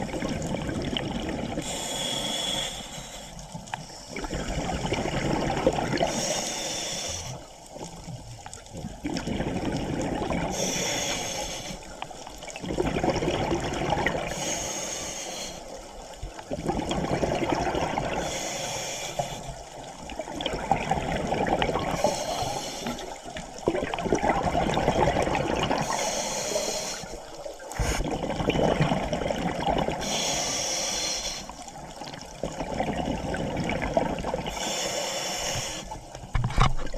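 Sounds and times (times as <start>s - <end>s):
gurgle of exhaled bubbles: 0.0s - 1.8s, 4.1s - 6.3s, 7.8s - 10.8s, 12.5s - 14.4s, 16.4s - 18.3s, 19.9s - 26.1s, 27.6s - 30.1s, 31.9s - 34.7s
regulator hissing inhale: 1.6s - 4.2s, 6.1s - 7.6s, 10.5s - 12.1s, 14.3s - 16.1s, 18.2s - 19.9s, 21.9s - 23.4s, 25.8s - 28.1s, 30.0s - 31.7s, 34.5s - 36.2s.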